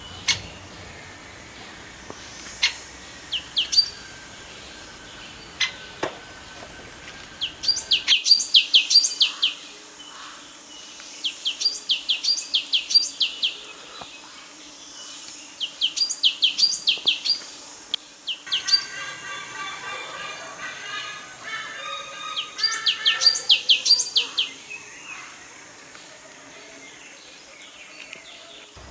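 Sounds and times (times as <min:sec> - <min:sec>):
bird chattering call: 0:02.5 - 0:04.1, 0:07.4 - 0:10.4, 0:18.4 - 0:25.3.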